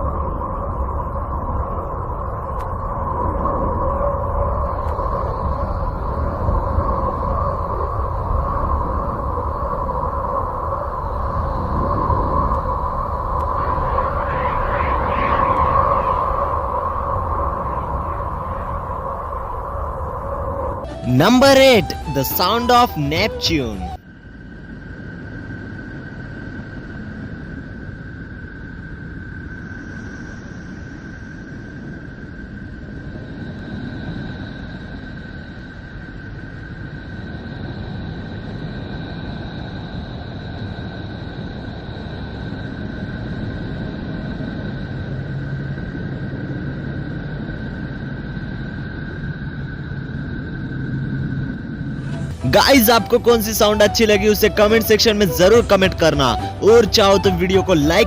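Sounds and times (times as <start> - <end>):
rumbling drone with hiss: 0.0 - 21.0, 24.0 - 52.5
steady held tone: 20.8 - 24.0
low rushing noise: 51.7 - 58.0
faint higher tone: 52.0 - 58.0.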